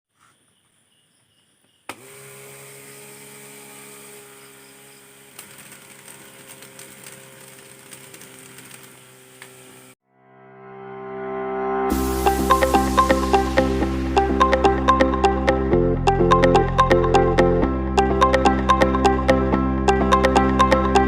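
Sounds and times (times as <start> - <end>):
small motor fan whirring: 1.9 - 10.0.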